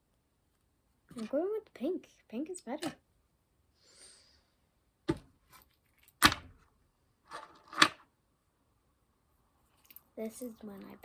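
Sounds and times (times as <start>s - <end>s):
fidget toys knocking and clicking: 6.2s - 6.6s.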